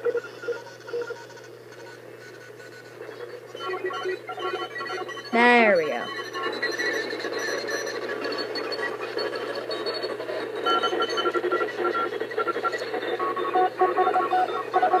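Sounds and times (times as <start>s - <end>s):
morse-like beeping tones: 3.6s - 8.7s, 9.3s - 15.0s
radio static hiss: 10.1s - 15.0s.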